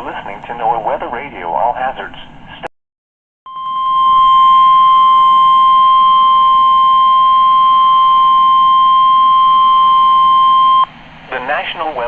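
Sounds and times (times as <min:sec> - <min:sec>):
steady warning alarm tone: 0:03.5 - 0:10.9.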